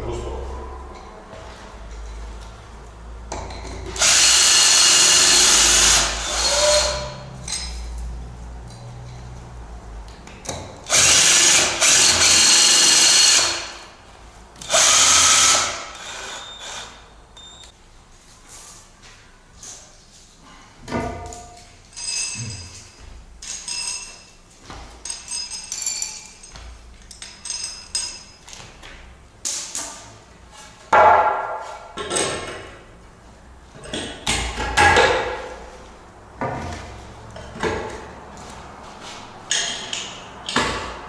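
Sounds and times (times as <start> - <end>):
metal nuts and washers clinking: 6.6 - 9.4, 19.6 - 30.3, 32.0 - 33.1, 39.5 - 40.9.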